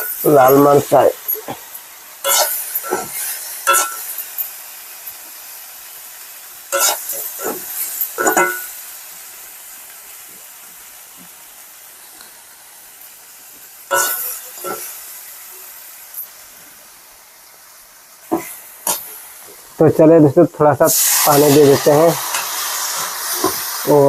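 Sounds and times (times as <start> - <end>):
meat sizzling in hot oil: 0.0 - 24.0
spoon scraping and knocking pan: 2.2 - 4.2, 6.7 - 8.8, 13.9 - 14.9, 18.2 - 19.1, 22.2 - 23.8.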